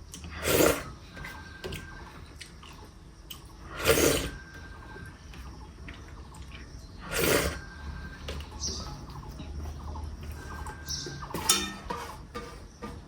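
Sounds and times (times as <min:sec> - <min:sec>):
person slurping food: 0:00.2 - 0:01.4, 0:03.6 - 0:04.5, 0:07.0 - 0:08.2.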